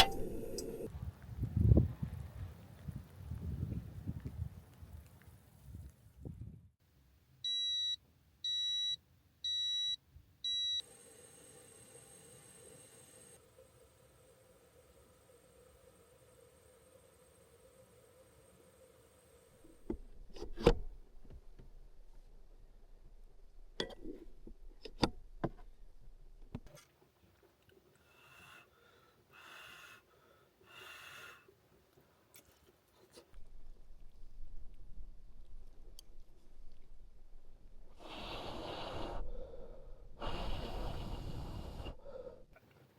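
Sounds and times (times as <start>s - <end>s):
faint steady hum: 0.0s - 0.9s, 10.4s - 26.6s
faint utensil clicks: 0.0s - 0.9s
appliance beeps: 7.5s - 10.8s
person blowing on food: 38.0s - 39.6s, 40.2s - 42.3s.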